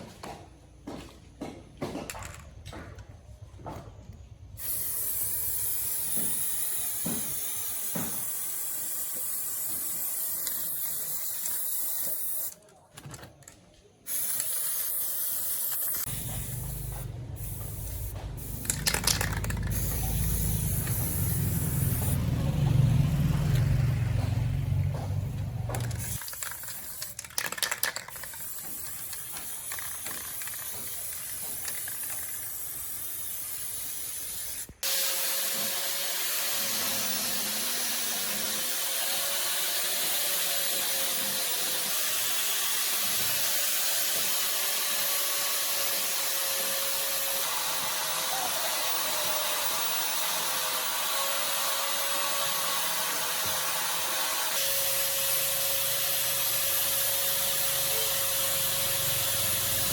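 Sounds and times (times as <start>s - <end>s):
spray hissing: 4.6s - 12.6s, 14.1s - 25.0s, 25.7s - 35.4s, 54.5s - 59.9s.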